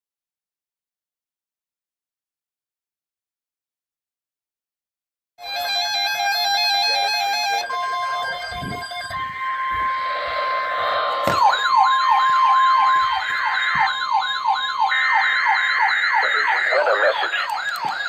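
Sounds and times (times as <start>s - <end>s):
electronic siren yelping: 5.4s - 18.0s
steady alarm tone: 5.4s - 18.0s
higher steady tone: 7.2s - 17.9s.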